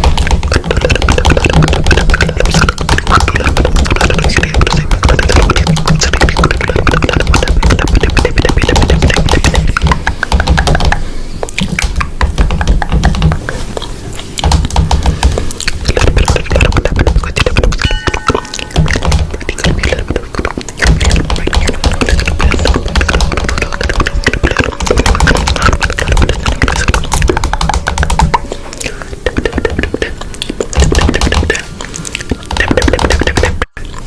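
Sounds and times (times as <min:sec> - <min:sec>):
loud music with fast beat: 0:00.0 - 0:11.0.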